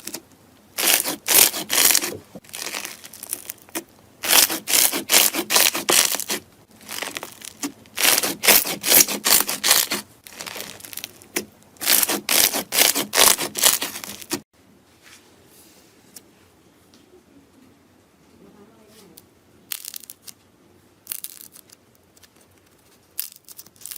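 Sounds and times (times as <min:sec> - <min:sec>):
slime crackling and popping: 0:00.8 - 0:14.4, 0:21.0 - 0:21.8.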